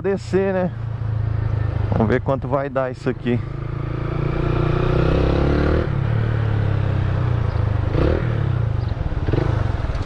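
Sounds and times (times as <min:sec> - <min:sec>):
motorcycle accelerating: 0:02.9 - 0:10.0.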